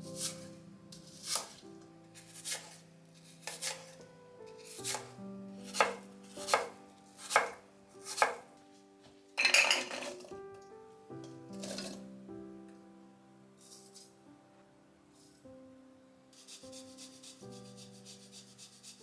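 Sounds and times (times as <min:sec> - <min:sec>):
knife chopping on cutting board: 0:01.1 - 0:01.6, 0:02.2 - 0:04.0, 0:04.6 - 0:08.5.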